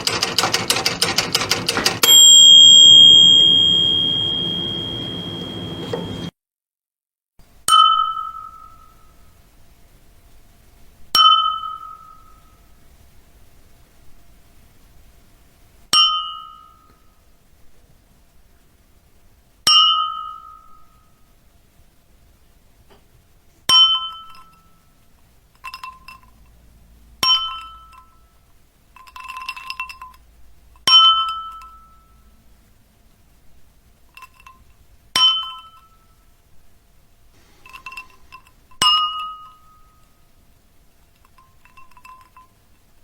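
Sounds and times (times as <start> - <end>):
bright dings: 2.0 - 6.3.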